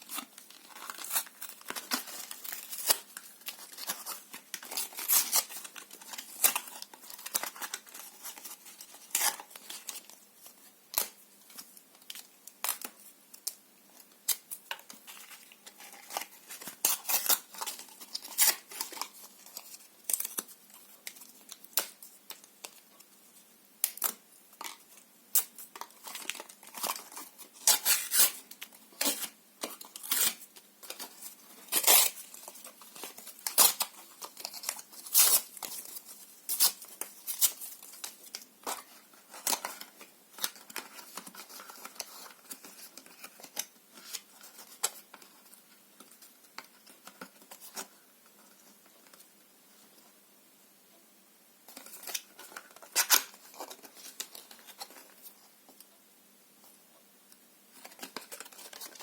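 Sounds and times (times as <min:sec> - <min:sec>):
paper tearing and crumpling: 0:31.7 - 0:32.3.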